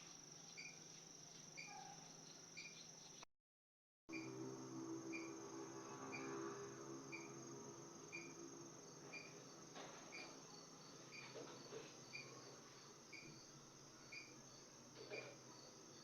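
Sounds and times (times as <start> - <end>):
crickets chirping: 0.0 - 3.2, 4.1 - 16.0
low hum: 4.1 - 9.4.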